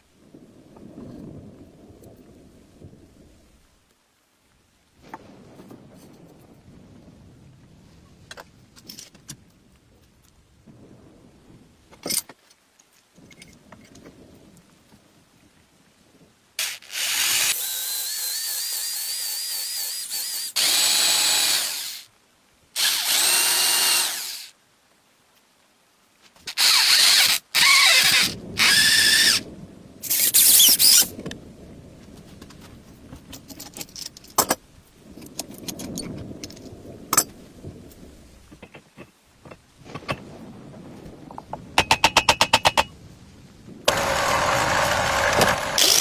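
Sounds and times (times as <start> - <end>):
power tool whining: 16.6 - 22.1, 22.8 - 24.5, 26.5 - 29.4, 43.9 - 46.0.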